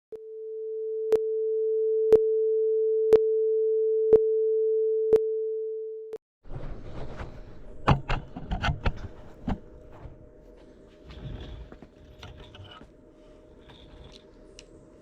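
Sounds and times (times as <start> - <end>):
electronic sine tone: 0.1 - 6.2.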